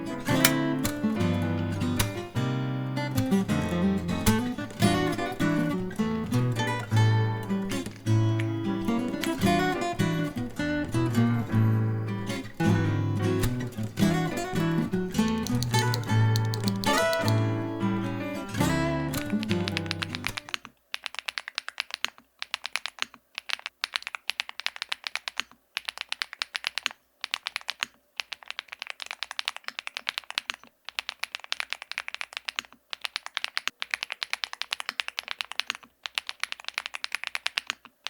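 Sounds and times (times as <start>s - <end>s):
fast typing on mechanical keyboard: 13.4s - 17.4s, 19.2s - 38.0s.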